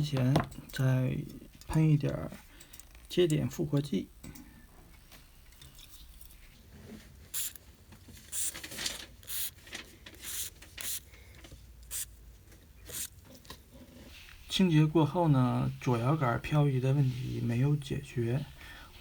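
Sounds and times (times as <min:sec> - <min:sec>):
aerosol spray hissing: 0:07.3 - 0:07.6, 0:08.3 - 0:08.6, 0:09.2 - 0:09.5, 0:10.2 - 0:11.0, 0:11.9 - 0:12.1, 0:12.9 - 0:13.1.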